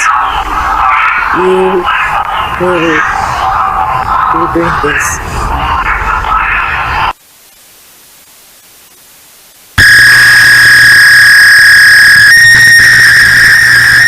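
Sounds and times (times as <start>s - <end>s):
heavy static: 0.0s - 14.0s
harsh emergency alarm tone: 9.8s - 14.0s.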